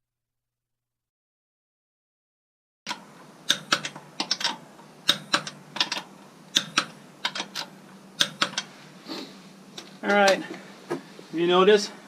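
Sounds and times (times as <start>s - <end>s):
sharp clicks and taps: 2.9s - 8.7s
low steady hum: 2.9s - 12.0s.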